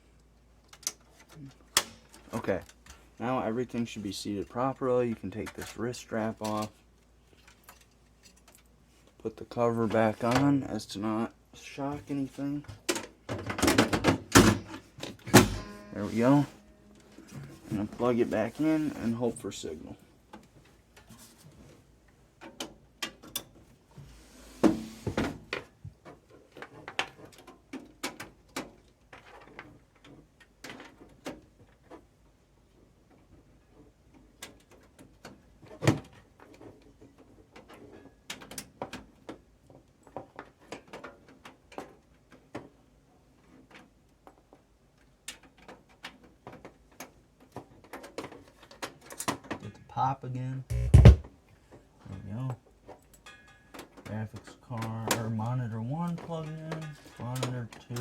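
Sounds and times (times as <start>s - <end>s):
computer tower clicks and knocks: 50.7s - 51.2s.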